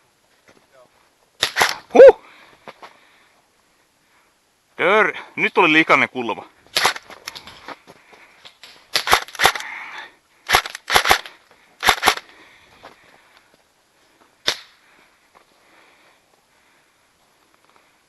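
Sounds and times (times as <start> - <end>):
airsoft gun shots: 1.4 - 1.8, 6.8 - 7.0, 8.9 - 9.6, 10.5 - 12.2.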